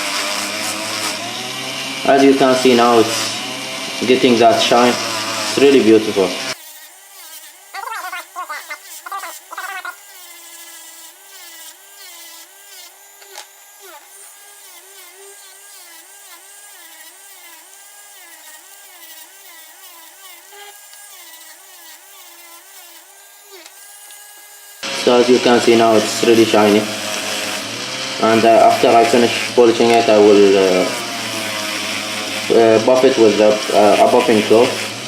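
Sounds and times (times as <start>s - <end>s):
rotary tool motor whine: 0.0s - 25.1s
polishing wheel rubbing: 6.5s - 11.6s.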